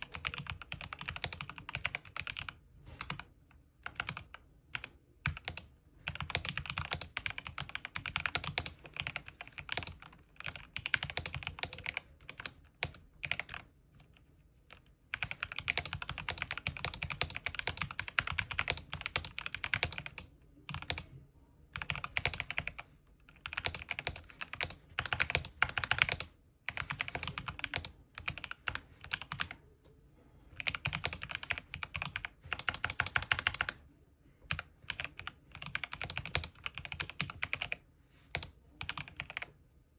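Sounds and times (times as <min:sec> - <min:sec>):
mechanical keyboard keys clacking: 0:00.0 - 0:03.2, 0:03.8 - 0:13.6.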